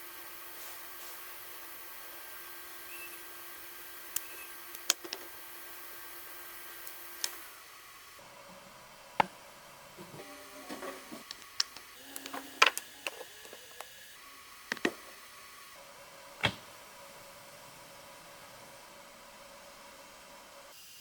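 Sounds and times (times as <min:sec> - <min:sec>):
sharp knocks and clicks: 0:16.4 - 0:16.7.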